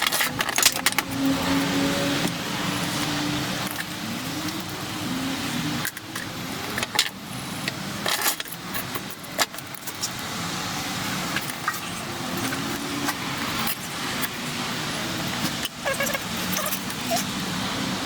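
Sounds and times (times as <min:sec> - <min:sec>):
metal parts clinking: 0:00.0 - 0:01.4, 0:05.8 - 0:10.2.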